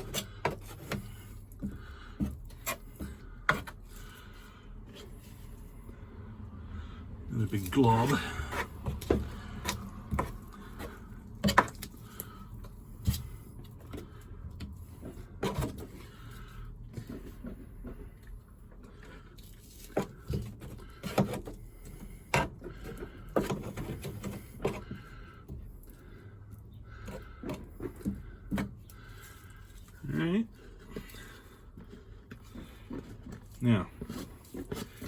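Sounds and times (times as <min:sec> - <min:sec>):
tools knocking and scraping: 0:00.0 - 0:04.1, 0:07.8 - 0:16.3, 0:19.7 - 0:26.0.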